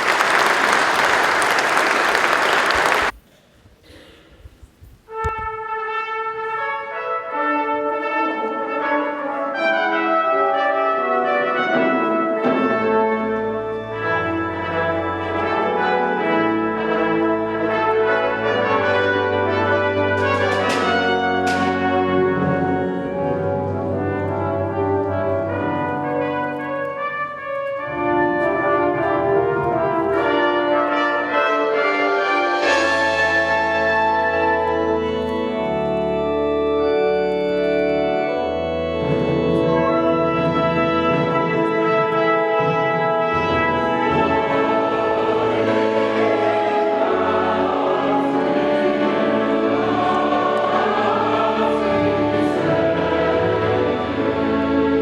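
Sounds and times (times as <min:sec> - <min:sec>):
brass playing slow chords: 0:05.8 - 0:55.0.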